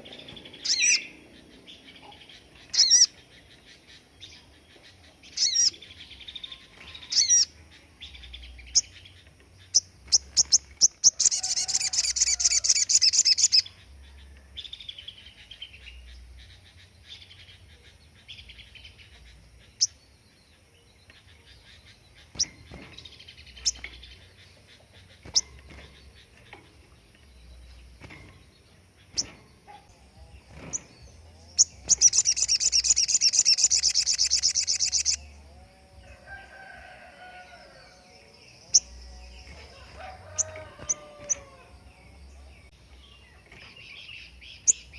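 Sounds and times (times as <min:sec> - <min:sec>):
bird rapid-fire trill: 0:30.5 - 0:35.3
songbird chirps and whistles: 0:31.6 - 0:35.3.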